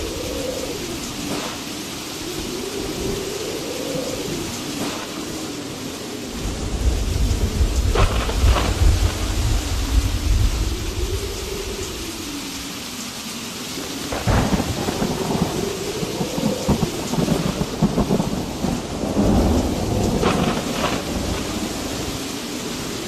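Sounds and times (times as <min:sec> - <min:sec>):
thunder rumbling: 0:00.0 - 0:13.1, 0:13.7 - 0:23.0
steady rain: 0:00.0 - 0:23.0.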